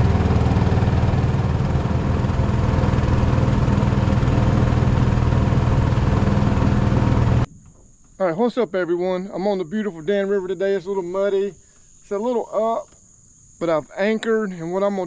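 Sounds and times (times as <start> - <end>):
boat motor running: 0.0 - 7.5.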